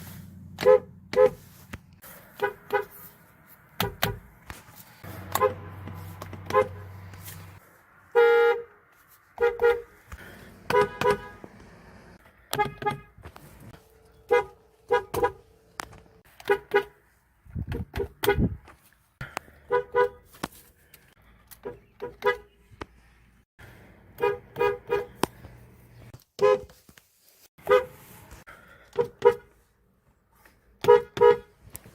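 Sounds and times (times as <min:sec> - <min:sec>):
car horns honking: 0:00.5 - 0:01.6, 0:02.2 - 0:03.1, 0:05.0 - 0:08.8, 0:09.4 - 0:13.3, 0:14.2 - 0:15.5, 0:16.4 - 0:17.0, 0:17.8 - 0:18.6, 0:19.6 - 0:20.3, 0:21.6 - 0:22.6, 0:24.1 - 0:25.2, 0:26.4 - 0:26.7, 0:27.6 - 0:28.2, 0:28.9 - 0:29.6, 0:30.8 - 0:31.7.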